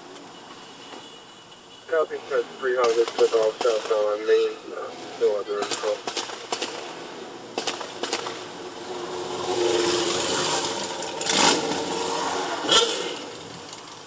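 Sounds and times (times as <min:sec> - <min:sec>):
car engine revving: 0:01.9 - 0:14.0.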